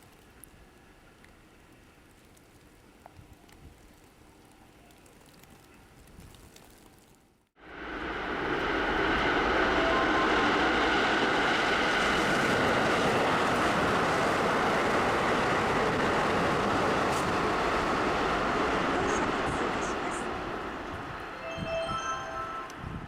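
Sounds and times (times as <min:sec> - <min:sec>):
electric train passing at speed: 0:07.6 - 0:23.0.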